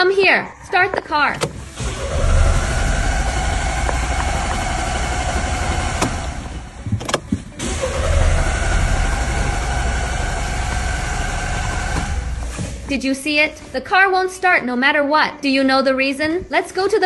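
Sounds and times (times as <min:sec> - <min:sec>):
starter motor cranking engine: 0:01.4 - 0:13.0.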